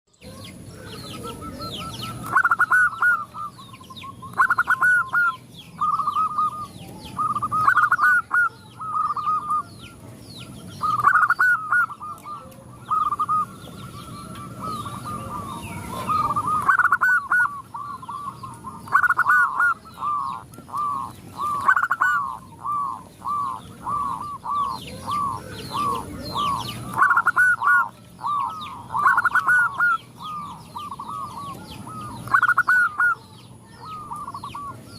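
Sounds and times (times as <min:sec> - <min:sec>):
doves cooing: 0:00.2 - 0:34.9.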